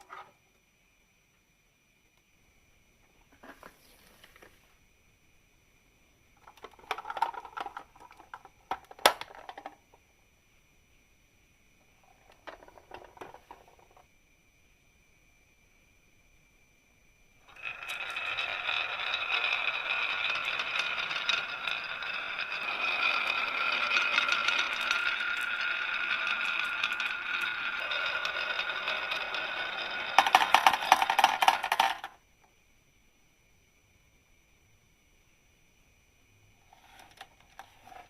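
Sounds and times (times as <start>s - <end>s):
marbles rolling on wooden track: 6.4s - 9.8s, 12.0s - 14.1s, 17.4s - 32.2s, 36.7s - 38.0s
marbles clattering clicks: 6.5s - 9.8s, 12.2s - 14.0s, 17.5s - 32.2s.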